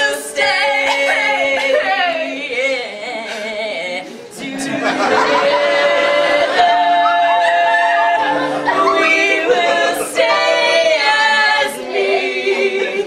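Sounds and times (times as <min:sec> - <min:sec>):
cast singing in harmony: 0:04.4 - 0:13.0.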